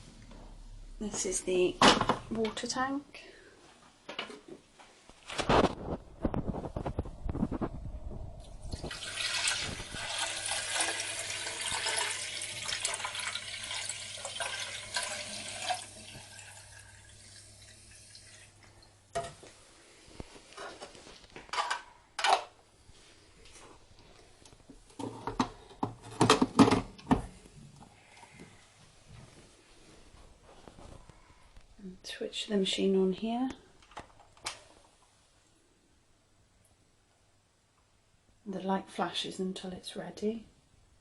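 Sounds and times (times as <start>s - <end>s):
water running into plastic tank: 8.4s - 19.0s
plastic tank knocking and clattering: 25.0s - 27.3s.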